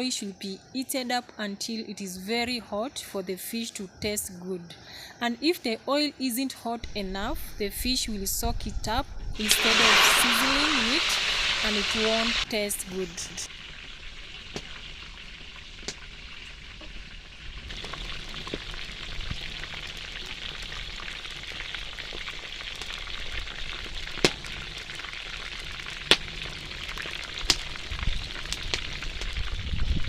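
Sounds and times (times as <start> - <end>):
oil popping: 9.4 - 12.5, 13.5 - 29.4
fish sizzling in hot oil: 9.4 - 30.0.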